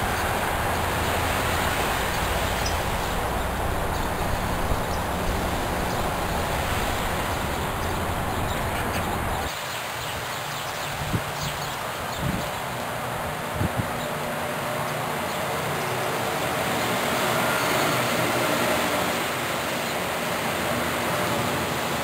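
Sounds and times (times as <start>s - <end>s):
low rumble: 0.0s - 9.5s
steady rushing noise: 0.0s - 22.0s.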